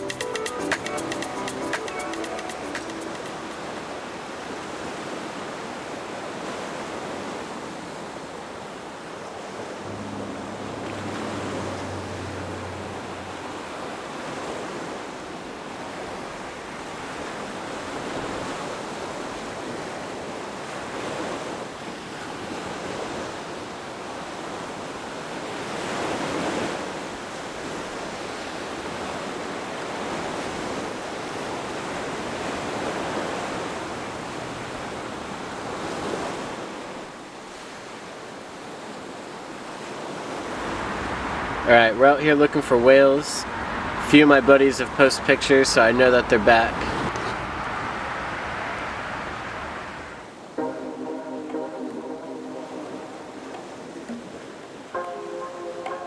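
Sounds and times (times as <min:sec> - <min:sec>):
ocean surf washing in: 0:00.0 - 0:56.0
wind buffeting microphone: 0:46.7 - 0:50.2.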